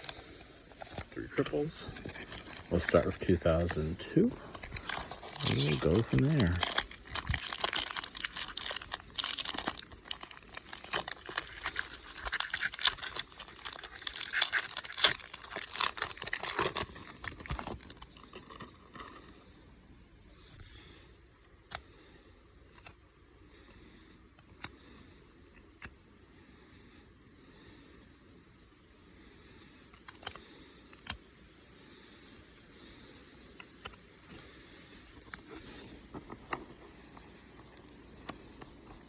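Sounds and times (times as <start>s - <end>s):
card pack wrapper tearing: 0.0s - 19.3s.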